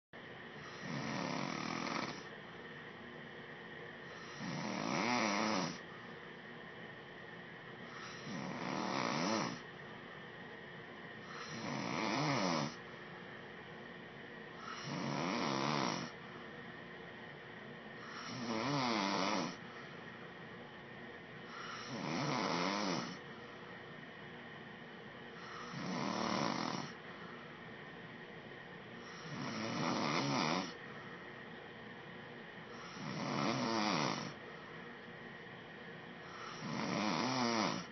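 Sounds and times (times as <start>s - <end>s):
man snoring: 0.6s - 2.3s, 4.1s - 5.9s, 7.8s - 9.6s, 11.2s - 12.9s, 14.6s - 16.2s, 18.0s - 19.6s, 21.5s - 23.2s, 25.4s - 27.0s, 29.0s - 30.8s, 32.7s - 34.4s, 36.2s - 37.9s.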